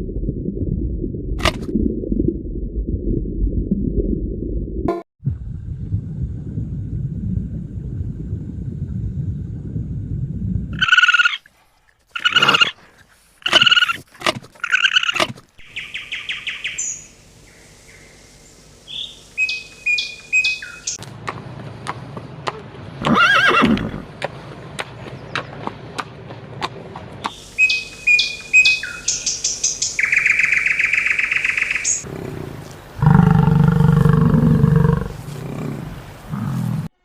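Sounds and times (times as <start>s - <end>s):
low animal rumble: 5.2s - 10.8s, 32.0s - 36.9s
animal calls and chirps: 10.8s - 11.4s, 12.2s - 12.8s, 14.6s - 21.0s, 27.3s - 36.8s
rising and falling animal call: 12.2s - 12.8s, 32.0s - 36.9s.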